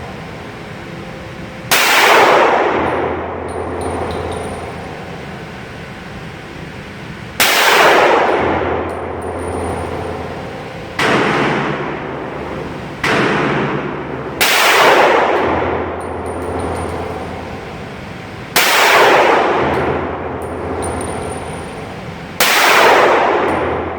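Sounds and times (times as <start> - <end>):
pistol shots with echo: 1.7 - 5.1, 7.4 - 12.2, 13.0 - 17.9, 18.6 - 20.8, 21.8 - 23.9.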